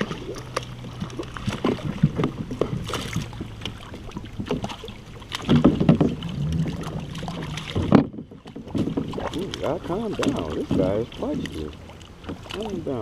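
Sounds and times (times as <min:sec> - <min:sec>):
fish thrashing against kayak: 0:00.0 - 0:13.0
knocks and clatter in kayak: 0:00.0 - 0:13.0.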